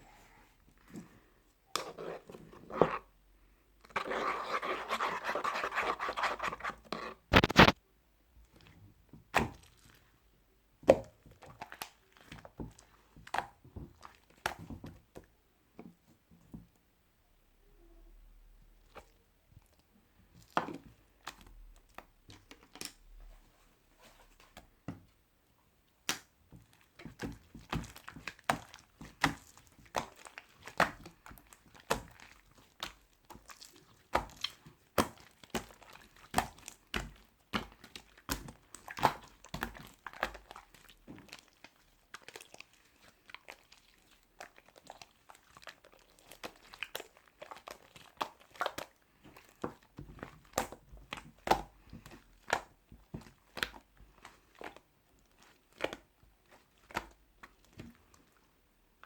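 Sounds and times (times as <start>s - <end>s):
crinkling and rustling: 3.8s - 7.8s
sharp clicks and taps: 7.3s - 7.8s.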